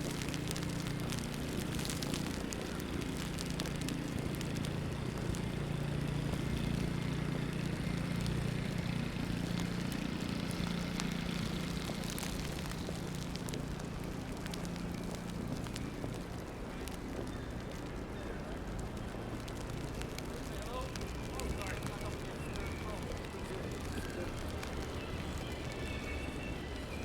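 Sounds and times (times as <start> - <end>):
light crackles: 0.0 - 27.0
low hum of traffic: 0.0 - 27.0.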